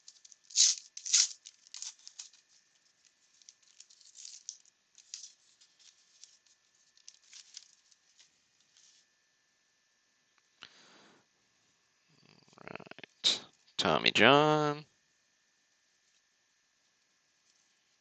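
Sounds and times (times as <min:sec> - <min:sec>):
wrapper tearing and crinkling: 0:00.0 - 0:08.3
soft rustling: 0:01.1 - 0:09.2, 0:15.8 - 0:18.0.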